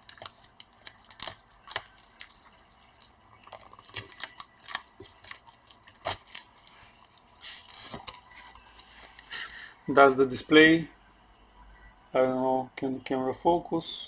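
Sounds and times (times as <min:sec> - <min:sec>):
tape peeling off: 0:00.0 - 0:06.8
crinkly tearing sounds: 0:00.0 - 0:09.4.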